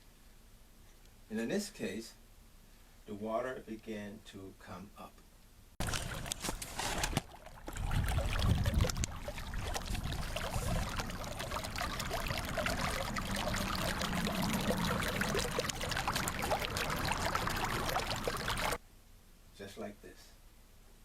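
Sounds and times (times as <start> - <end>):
water bubbling from the ground: 5.8 - 18.8.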